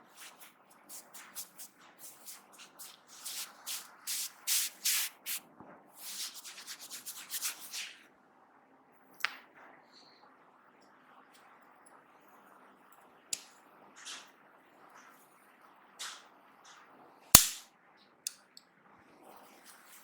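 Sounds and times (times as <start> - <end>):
hands rubbing through hair: 0.0 - 5.4, 6.0 - 8.0
sharp click: 17.4 - 17.6.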